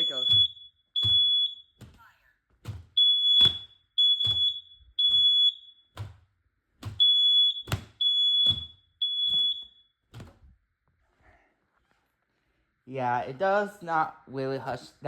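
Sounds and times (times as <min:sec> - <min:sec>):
smoke alarm beeping: 0:00.0 - 0:01.8, 0:02.9 - 0:06.0, 0:06.8 - 0:10.0.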